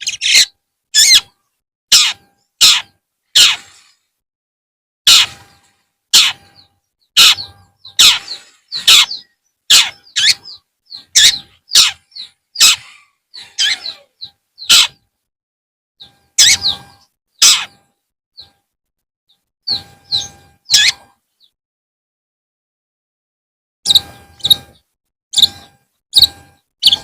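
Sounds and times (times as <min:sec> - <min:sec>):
bird harsh scratchy calls: 0:00.0 - 0:04.0, 0:05.1 - 0:15.0, 0:16.0 - 0:18.6, 0:19.7 - 0:21.1, 0:23.9 - 0:24.8, 0:25.4 - 0:27.0
bird high whistled notes: 0:06.2 - 0:14.0, 0:16.0 - 0:17.7, 0:19.7 - 0:21.1, 0:23.9 - 0:24.8, 0:25.4 - 0:27.0.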